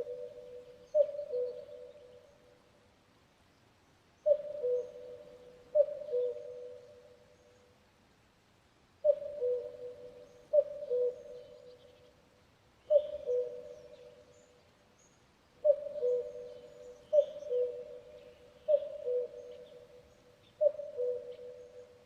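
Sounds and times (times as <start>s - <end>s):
cuckoo calling: 0.0s - 2.2s, 4.2s - 7.1s, 9.0s - 12.0s, 12.9s - 14.3s, 15.6s - 22.0s
faint bird chirps: 0.0s - 2.5s, 12.8s - 22.0s.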